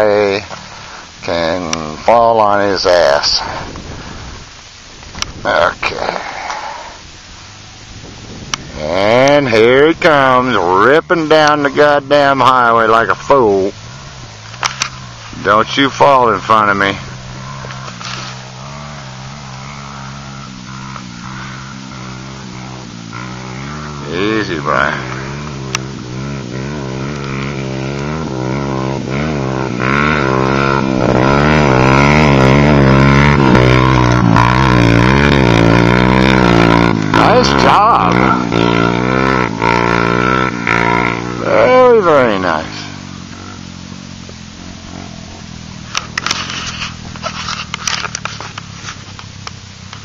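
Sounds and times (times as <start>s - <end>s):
dirt bike engine revving: 0.0s - 50.0s
scraping and crackling: 13.9s - 15.8s, 16.9s - 22.0s, 45.8s - 50.0s.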